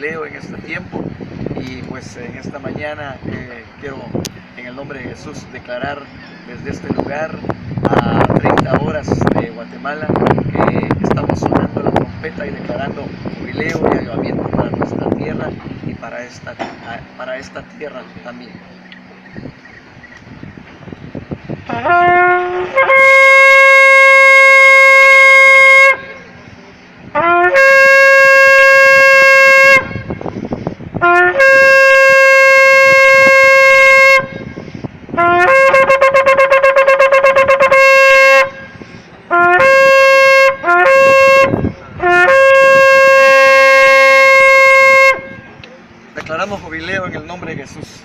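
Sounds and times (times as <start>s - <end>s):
shofar blasts: 21.4s - 45.6s.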